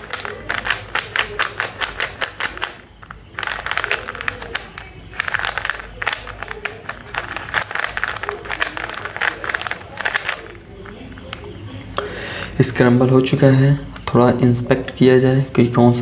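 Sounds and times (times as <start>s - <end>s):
puzzle cube plastic clicking: 0.0s - 11.5s.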